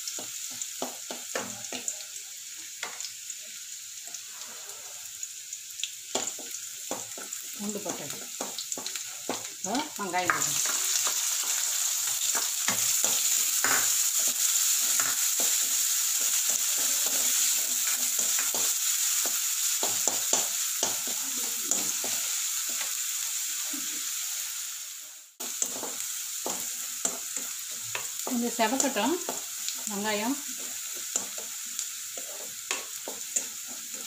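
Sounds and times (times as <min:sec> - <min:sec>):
onion and garlic sizzling in oil: 0:00.0 - 0:34.0
spatula scraping a pan: 0:10.3 - 0:23.0, 0:30.4 - 0:34.0.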